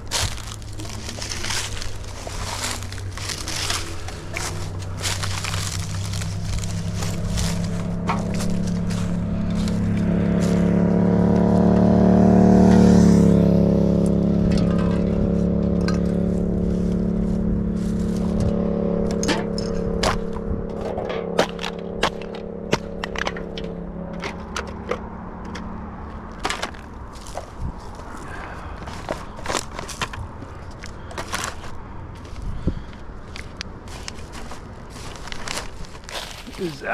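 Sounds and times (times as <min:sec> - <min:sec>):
plastic litter crackling: 0:00.0 - 0:10.6, 0:26.3 - 0:36.9
vehicle passing: 0:00.0 - 0:36.9.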